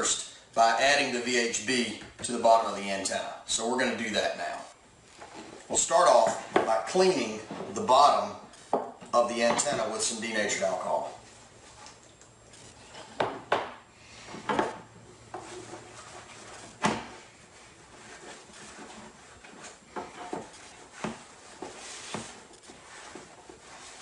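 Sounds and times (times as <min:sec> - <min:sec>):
objects knocking on workbench: 0:13.2 - 0:13.8, 0:14.4 - 0:15.5.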